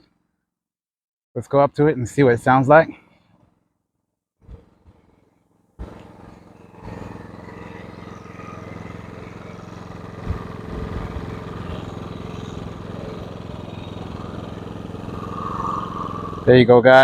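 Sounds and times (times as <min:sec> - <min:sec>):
generator engine running: 0:05.8 - 0:17.0.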